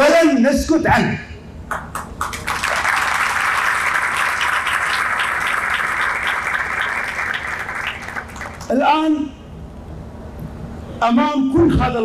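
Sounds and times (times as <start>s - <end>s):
audience applause: 1.7s - 8.7s.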